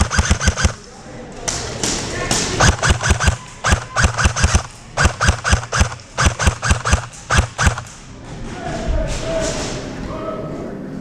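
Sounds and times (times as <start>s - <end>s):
airsoft guns firing: 0.0s - 0.9s, 1.5s - 8.0s.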